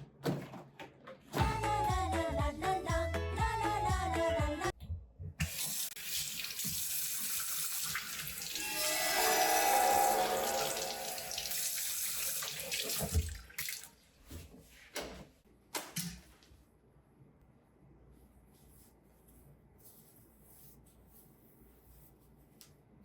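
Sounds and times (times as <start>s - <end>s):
tap water running into sink: 5.4s - 8.6s, 10.5s - 13.9s.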